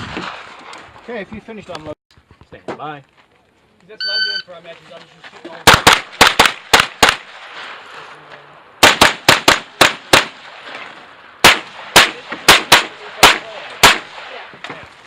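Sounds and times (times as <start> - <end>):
rapid pistol shots: 5.6 - 7.5, 8.8 - 10.7, 11.4 - 14.4.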